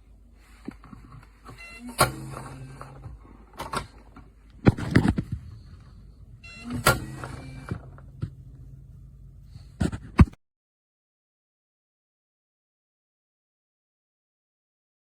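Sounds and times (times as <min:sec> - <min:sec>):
electronic lock beep: 0:01.5 - 0:03.0, 0:06.4 - 0:08.0
latch motor running: 0:01.5 - 0:08.9.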